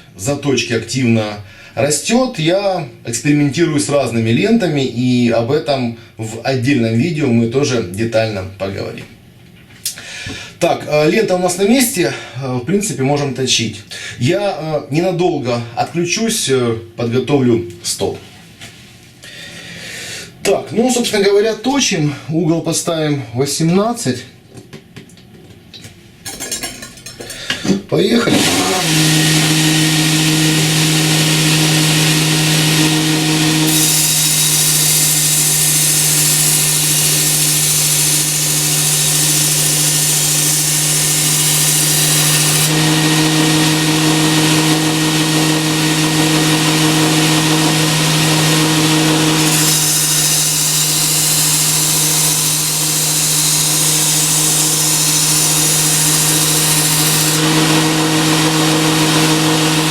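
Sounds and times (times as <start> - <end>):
sharpener motor humming: 28.3 - 59.9
knife grinding on abrasive belt: 33.5 - 42.9, 48.2 - 57.9.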